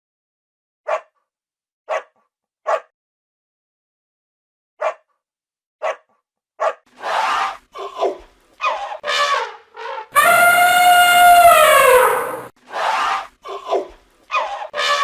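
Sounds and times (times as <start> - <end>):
dog barks: 0.8 - 1.2, 1.9 - 2.9, 4.8 - 5.2, 5.8 - 6.9
elephant trumpeting calls: 10.2 - 12.5.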